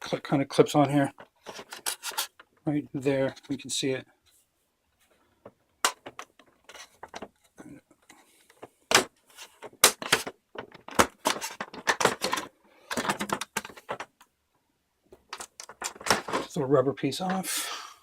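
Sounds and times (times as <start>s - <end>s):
plastic clattering: 1.1s - 2.6s, 5.4s - 14.2s, 15.1s - 16.6s.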